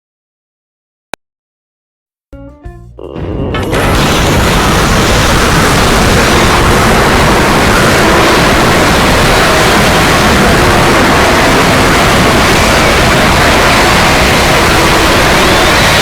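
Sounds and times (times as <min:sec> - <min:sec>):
loud static rushing noise: 0:03.5 - 0:16.0.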